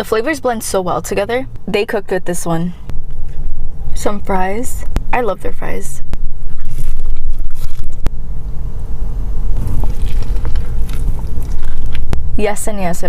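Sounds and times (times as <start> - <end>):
car cabin rumble: 0.4 - 13.0
chewing fries: 9.6 - 12.2.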